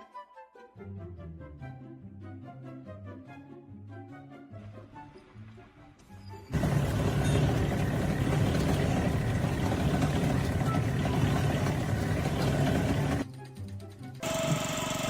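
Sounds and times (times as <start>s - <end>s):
heavy engine running rough: 6.5s - 13.2s, 14.2s - 15.0s.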